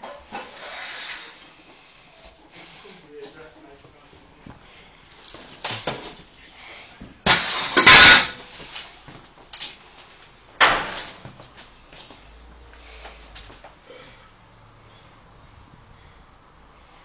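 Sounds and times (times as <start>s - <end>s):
loud crashing impacts: 7.3s - 8.5s.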